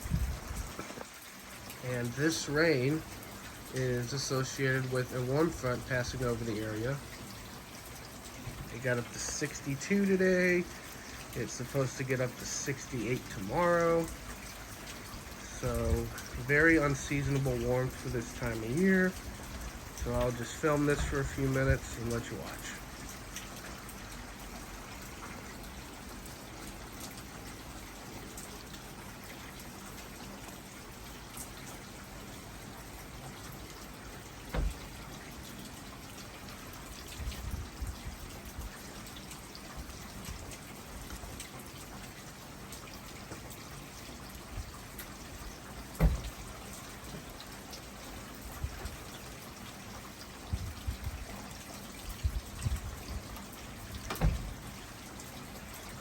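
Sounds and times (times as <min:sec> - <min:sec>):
steady rain: 0:00.0 - 0:56.0
sharp knocks: 0:46.0 - 0:46.4.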